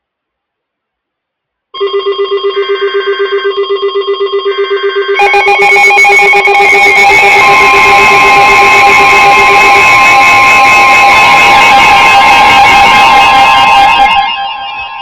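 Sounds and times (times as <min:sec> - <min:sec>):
louder alarm with sharp clicks: 0:01.8 - 0:15.0
rapid pulsing electronic alarm: 0:01.8 - 0:15.0.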